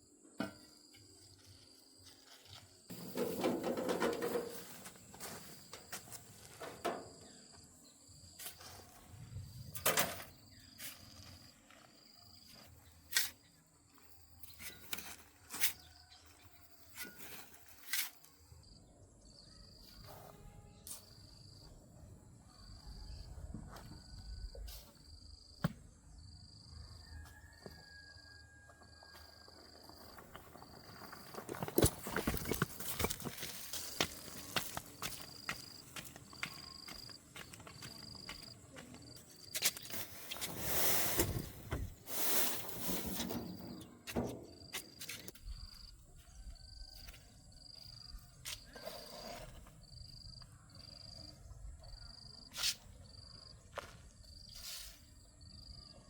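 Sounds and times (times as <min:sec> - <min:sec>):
knocks and clatter of tools: 0:02.9 - 0:07.3, 0:42.9 - 0:45.4
insect chirping: 0:43.4 - 0:56.0.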